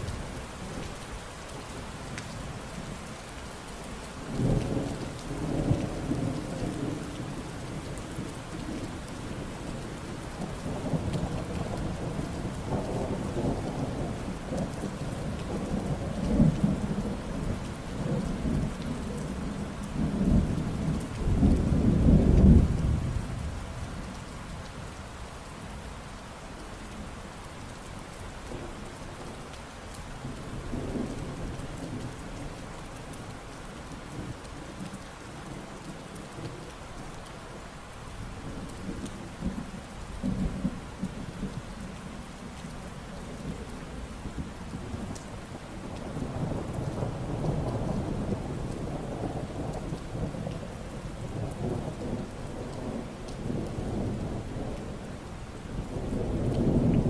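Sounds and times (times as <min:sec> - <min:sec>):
steady rain falling: 0:00.0 - 0:57.0
thunder rumbling: 0:55.8 - 0:57.0.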